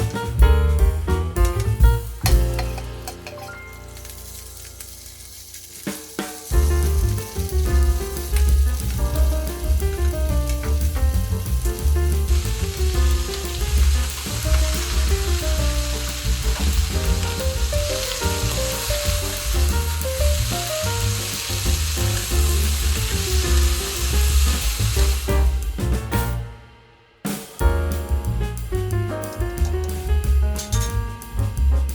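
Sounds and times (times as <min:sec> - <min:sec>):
background music with bass: 0:00.0 - 0:03.2, 0:06.5 - 0:26.7, 0:27.6 - 0:31.9
stir-fry sizzling in a pan: 0:02.5 - 0:09.8, 0:10.4 - 0:25.7.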